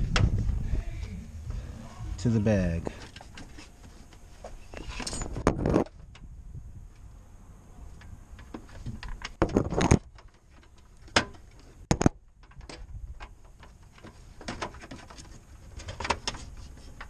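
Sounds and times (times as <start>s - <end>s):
handling clicks and rattles: 7.9s - 17.0s.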